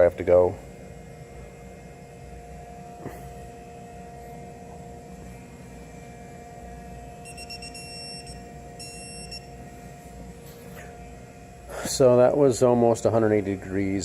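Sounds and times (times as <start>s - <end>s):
low electrical hum: 0.0s - 14.0s
torque wrench beeping: 7.2s - 9.6s.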